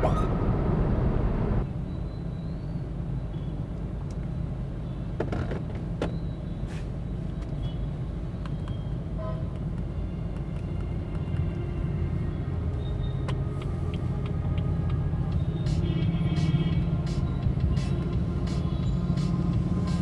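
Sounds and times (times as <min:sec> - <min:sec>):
road and engine rumble in car: 0:00.0 - 0:20.0
music from car speakers: 0:15.4 - 0:20.0.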